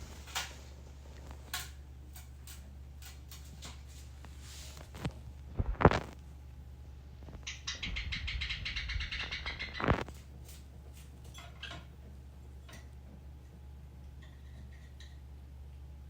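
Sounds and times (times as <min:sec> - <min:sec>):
steady low hum: 0:00.0 - 0:16.0
bird twittering: 0:07.4 - 0:10.2.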